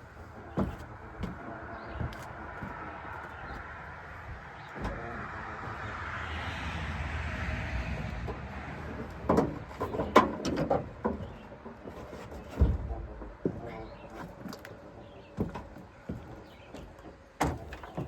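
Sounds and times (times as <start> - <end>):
sharp knocks and clatter: 0.4 - 2.8, 8.2 - 14.7.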